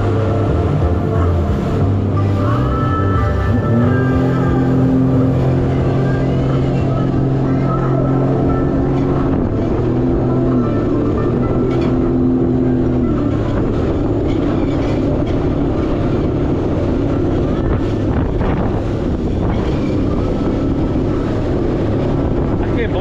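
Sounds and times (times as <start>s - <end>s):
jet ski engine running: 0.0s - 23.0s.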